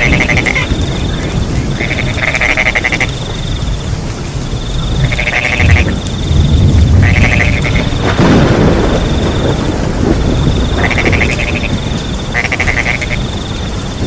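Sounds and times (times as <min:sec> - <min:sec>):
cricket trill: 0:00.0 - 0:14.0
frogs croaking: 0:00.0 - 0:14.0
rain hissing: 0:00.0 - 0:14.0
low rumble: 0:03.7 - 0:12.4.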